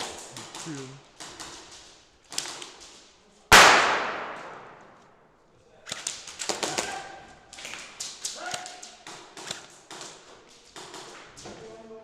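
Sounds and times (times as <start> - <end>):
loud echoing bang: 3.5 - 4.8.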